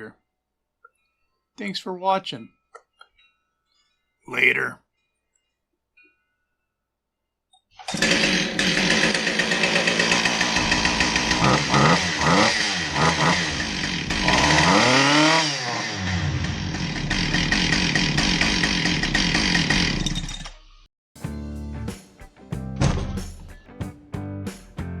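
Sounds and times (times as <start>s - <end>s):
chainsaw revving and idling: 7.8s - 20.4s.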